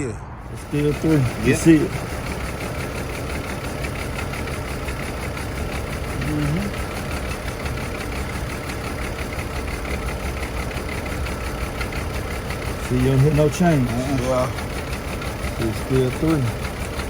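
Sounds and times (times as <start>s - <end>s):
car engine idling with misfires: 0.4s - 17.0s.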